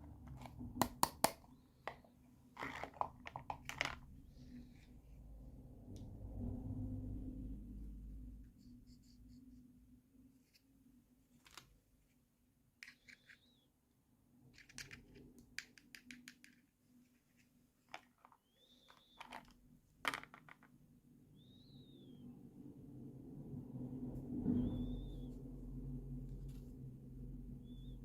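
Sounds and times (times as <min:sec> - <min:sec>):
small objects clicking and scraping: 0:00.1 - 0:04.9, 0:11.4 - 0:11.8, 0:12.8 - 0:13.6, 0:14.4 - 0:20.8
low steady hum: 0:03.6 - 0:12.5, 0:21.4 - 0:28.0.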